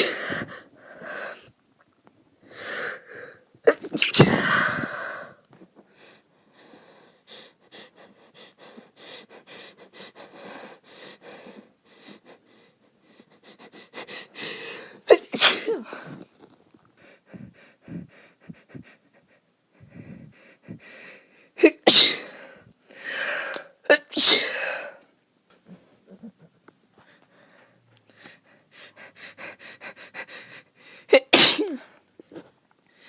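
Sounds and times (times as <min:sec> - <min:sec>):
woman breathing and sniffing: 0:02.4 - 0:33.0
woman sneezing: 0:03.7 - 0:04.8, 0:15.1 - 0:15.9, 0:21.6 - 0:22.3, 0:23.9 - 0:24.8, 0:31.1 - 0:31.9.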